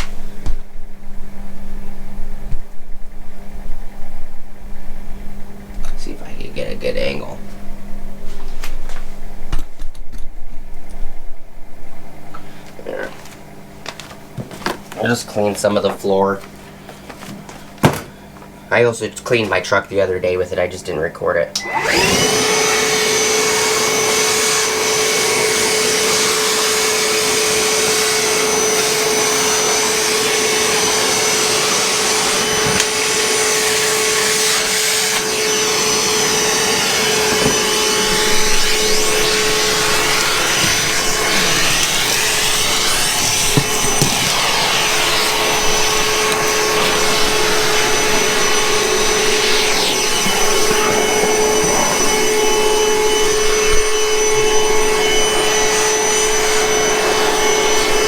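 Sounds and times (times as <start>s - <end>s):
shop vacuum running: 0.0s - 10.0s, 11.9s - 58.0s
debris knocking in vacuum: 39.8s - 48.3s.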